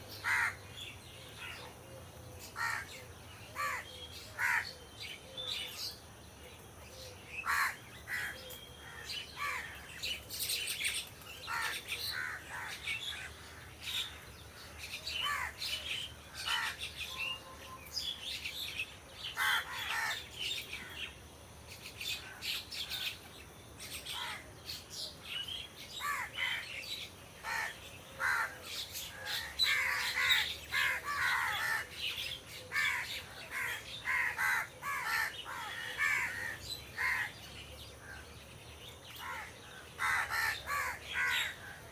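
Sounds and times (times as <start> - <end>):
crows cawing: 0.2 - 0.7, 2.6 - 3.0, 3.6 - 4.8, 7.4 - 9.9, 11.5 - 14.2, 15.2 - 15.6, 16.3 - 16.8, 19.4 - 20.2, 26.0 - 26.6, 27.4 - 31.9, 32.7 - 37.4, 39.2 - 41.9.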